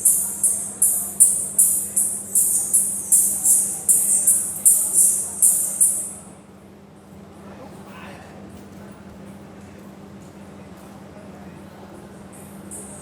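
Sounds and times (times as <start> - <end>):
hiss-like percussion pattern: 0.0 - 6.2, 12.3 - 13.0
faint steady hum: 0.0 - 8.0, 11.2 - 13.0.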